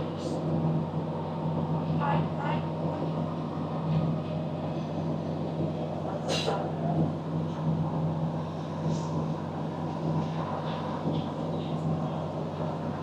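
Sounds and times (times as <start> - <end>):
diesel engine drone: 0.0 - 13.0.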